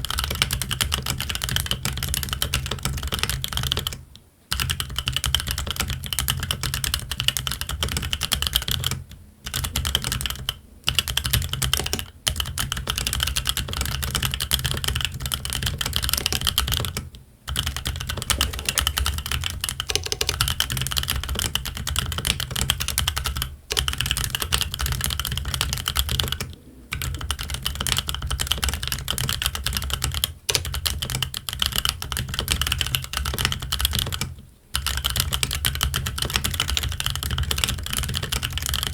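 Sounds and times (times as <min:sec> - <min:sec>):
fast mechanical keyboard typing: 0:12.6 - 0:38.9.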